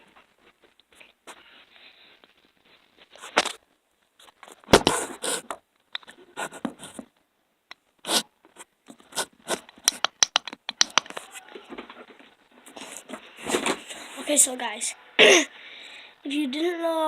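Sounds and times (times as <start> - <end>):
sharp clicks: 9.7 - 11.2
scraping and rustling: 10.8 - 14.5.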